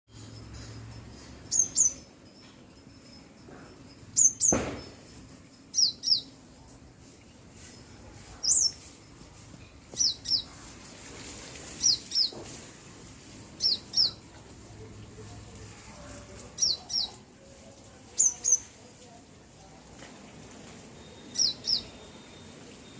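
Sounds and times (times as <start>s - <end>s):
small bird chirping: 1.4s - 3.2s, 3.9s - 5.0s, 5.7s - 6.4s, 7.0s - 9.0s, 9.9s - 10.6s, 11.8s - 12.4s, 13.6s - 14.3s, 16.5s - 17.3s, 18.1s - 18.8s, 21.0s - 22.9s
low thump: 4.5s - 5.0s.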